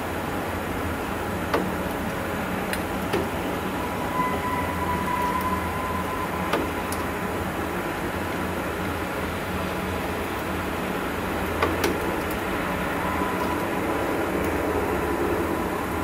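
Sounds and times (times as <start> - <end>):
noisy rumble: 0.7 - 16.0
low drone: 3.3 - 8.7, 12.6 - 16.0
steady high tone: 3.6 - 8.0, 12.8 - 14.4.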